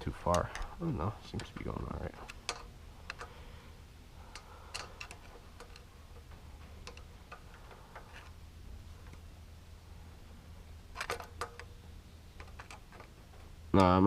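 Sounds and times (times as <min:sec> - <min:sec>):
hand tools tapping metal: 0:00.0 - 0:03.4, 0:04.2 - 0:08.4, 0:10.9 - 0:11.8, 0:12.4 - 0:14.0
low steady hum: 0:00.0 - 0:14.0.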